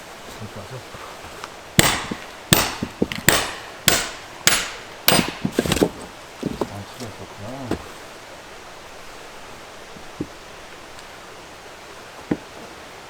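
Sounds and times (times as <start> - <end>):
axe chopping firewood: 1.7 - 7.9
small knocks of wood: 1.8 - 7.9, 10.0 - 11.1, 12.2 - 12.7.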